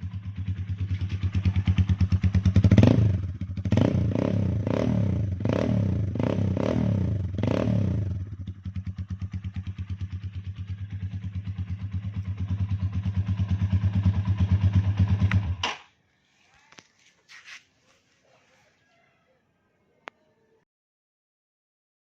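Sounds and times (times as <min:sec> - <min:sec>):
motorcycle engine idling: 0:00.0 - 0:15.6
motorcycle engine revving: 0:00.0 - 0:15.6.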